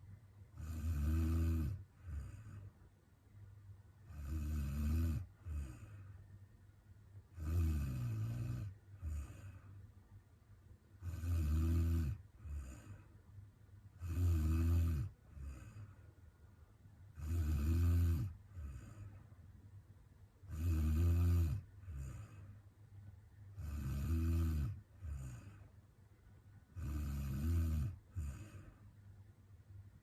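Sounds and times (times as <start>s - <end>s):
woman snoring: 0.6s - 2.7s, 4.0s - 6.1s, 7.3s - 9.7s, 11.0s - 13.0s, 14.0s - 15.9s, 17.1s - 19.2s, 20.5s - 22.5s, 23.5s - 25.7s, 26.7s - 28.8s
soft breath sound: 1.7s - 4.3s, 5.2s - 7.2s, 8.6s - 10.7s, 12.1s - 13.9s, 15.0s - 16.8s, 18.2s - 19.6s, 21.6s - 23.8s, 24.7s - 27.1s, 27.8s - 30.0s.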